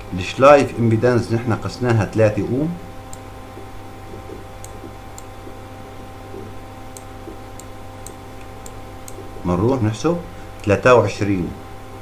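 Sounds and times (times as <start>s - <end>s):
low electrical hum: 0.0s - 12.0s
light clicks: 3.1s - 3.3s.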